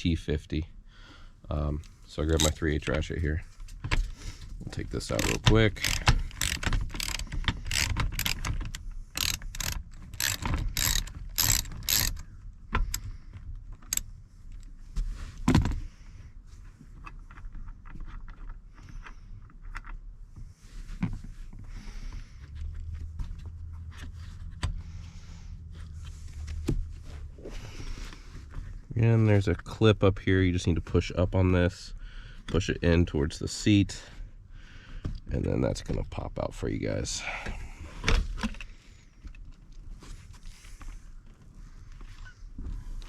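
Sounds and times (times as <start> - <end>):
parts being handled: 1.8 - 2.8, 3.6 - 14.7
ratchet clicking rapidly: 2.4 - 2.6, 5.0 - 12.2.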